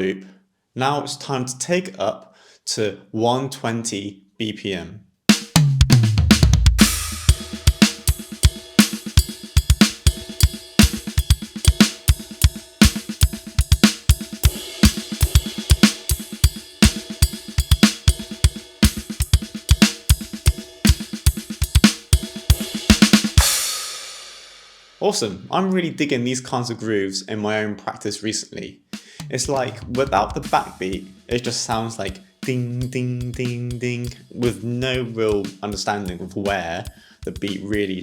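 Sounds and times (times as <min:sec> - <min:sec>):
drum kit groove: 0:05.3 - 0:25.4, 0:29.0 - 0:38.0
snare drum hits: 0:05.4 - 0:24.1
kick drum: 0:05.6 - 0:22.7
ride cymbal: 0:06.8 - 0:25.0.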